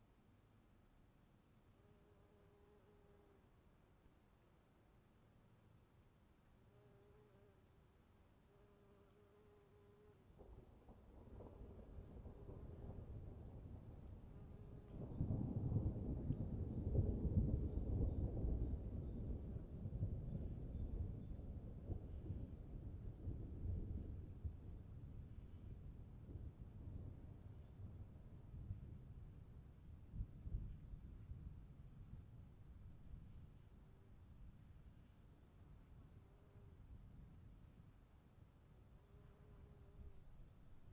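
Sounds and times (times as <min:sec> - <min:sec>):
crickets chirring: 0:00.0 - 0:40.9
low storm rumble: 0:10.8 - 0:34.5.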